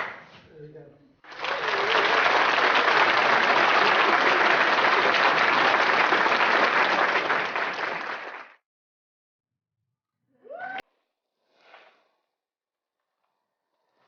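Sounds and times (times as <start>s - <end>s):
crowd applauding: 1.2s - 8.6s.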